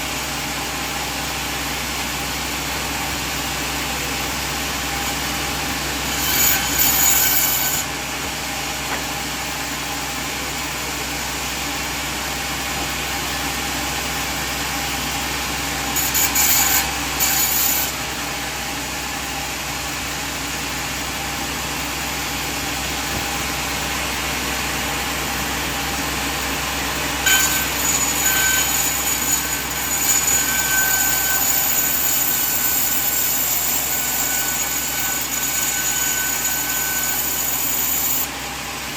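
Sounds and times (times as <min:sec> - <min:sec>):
band saw running: 0:00.0 - 0:38.9
saw blade cutting through wood: 0:03.9 - 0:09.9, 0:14.8 - 0:19.2, 0:27.2 - 0:38.4.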